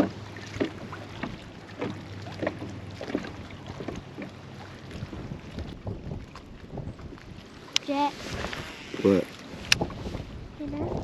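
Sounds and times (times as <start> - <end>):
light knocks against hull: 0.0 - 8.6
boat low steady hum: 0.0 - 11.0.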